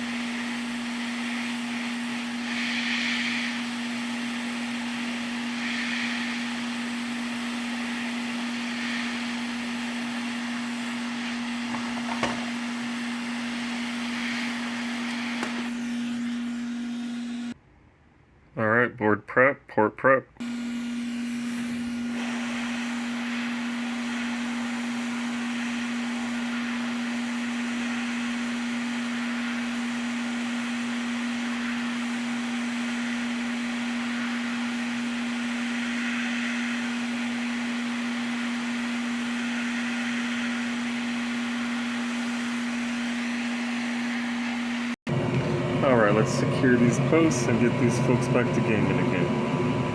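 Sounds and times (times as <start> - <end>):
electric blower running: 0.0 - 17.6, 20.4 - 49.9.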